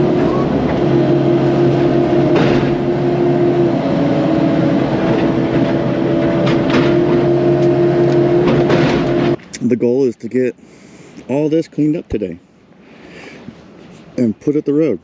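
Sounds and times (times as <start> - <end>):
excavator diesel engine running: 0.0 - 9.4
constant hum: 0.0 - 15.0
short sharp knocks: 6.4 - 9.5.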